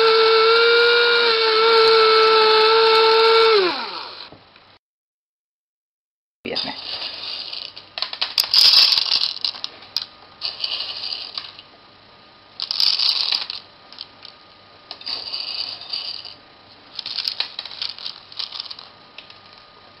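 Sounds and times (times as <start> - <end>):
electric coffee grinder: 0.0 - 4.3
coffee beans rattling and crunching: 6.5 - 11.7, 12.6 - 19.5.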